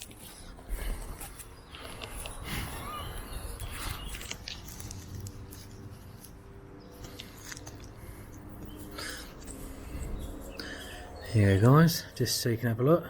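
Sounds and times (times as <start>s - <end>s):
footsteps through undergrowth: 0.0s - 8.8s.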